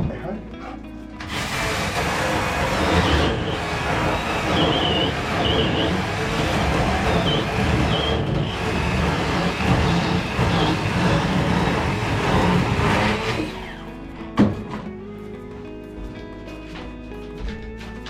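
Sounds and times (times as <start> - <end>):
sawmill engine running under load: 1.3 - 13.9.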